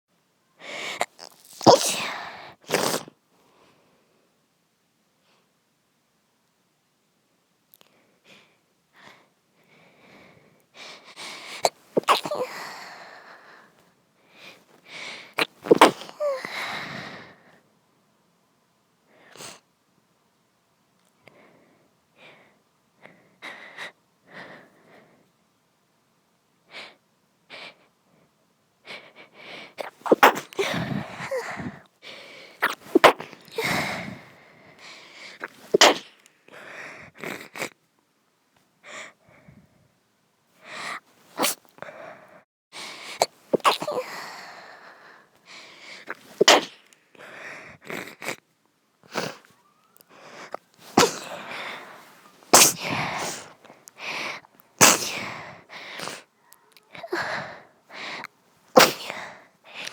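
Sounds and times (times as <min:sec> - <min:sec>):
woman sneezing: 0:01.0 - 0:03.1, 0:11.6 - 0:12.8, 0:15.4 - 0:16.5, 0:29.8 - 0:31.8, 0:32.6 - 0:34.2, 0:35.4 - 0:36.2, 0:41.4 - 0:41.7, 0:43.2 - 0:44.3, 0:46.1 - 0:46.8, 0:50.5 - 0:53.6, 0:54.8 - 0:55.3, 0:58.8 - 0:59.3
sharp breaths: 0:49.1 - 0:59.9.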